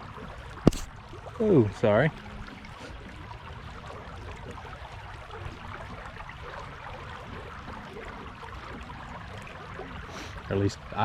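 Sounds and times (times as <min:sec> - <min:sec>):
creek water flowing: 0:00.0 - 0:11.0.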